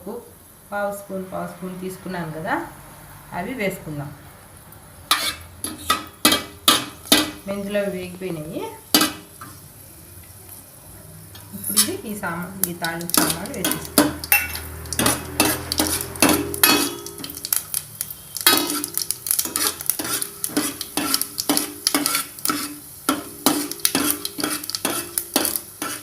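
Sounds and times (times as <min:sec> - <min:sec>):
spices sizzling in hot oil: 0:00.0 - 0:26.0
metal spoon clinking on pan: 0:05.1 - 0:07.4, 0:11.4 - 0:12.0, 0:12.6 - 0:26.0.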